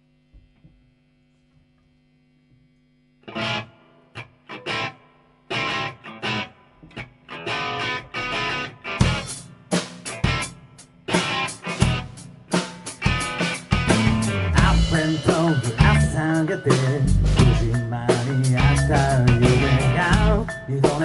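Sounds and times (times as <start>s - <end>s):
amplifier hum: 0.0s - 20.7s
distorted electric guitar chords: 0.1s - 21.0s
drum hits: 9.0s - 21.0s.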